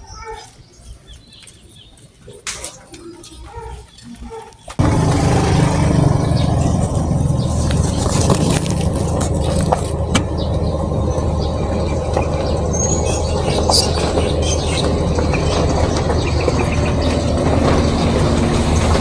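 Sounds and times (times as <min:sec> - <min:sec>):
vehicle engine running: 0:04.8 - 0:19.0.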